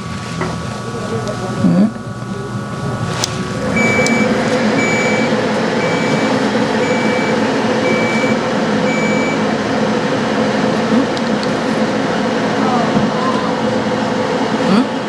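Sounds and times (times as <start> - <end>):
machine whirring: 0.0 - 15.0
short high-pitched beeps: 3.8 - 9.4.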